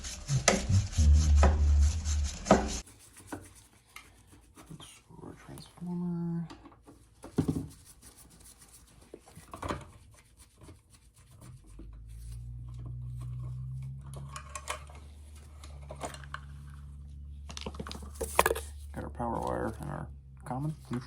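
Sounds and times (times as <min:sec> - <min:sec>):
steady low hum: 0:00.0 - 0:02.8
small clicks and rubbing: 0:06.5 - 0:19.0.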